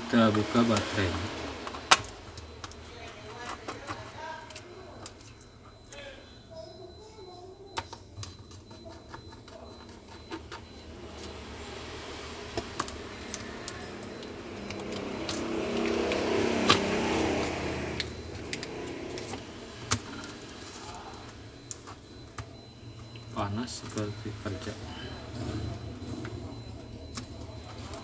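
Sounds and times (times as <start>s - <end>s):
small tools clicking and tapping: 1.6s - 6.0s, 7.7s - 11.4s, 12.5s - 24.7s
vehicle engine passing by: 13.5s - 19.2s.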